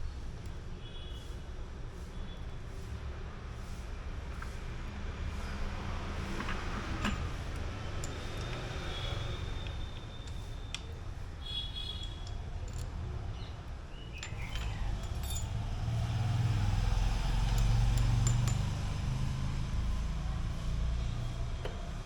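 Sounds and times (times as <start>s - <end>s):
metallic clinks of brake parts: 6.3s - 16.3s, 17.3s - 19.0s.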